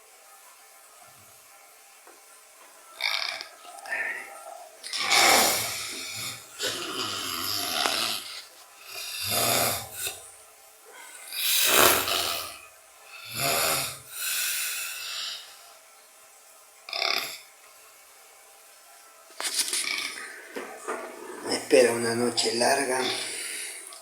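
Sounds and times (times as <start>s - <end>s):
man snoring heavily: 3.0s - 10.3s, 11.1s - 15.6s, 16.9s - 17.5s, 22.7s - 24.0s.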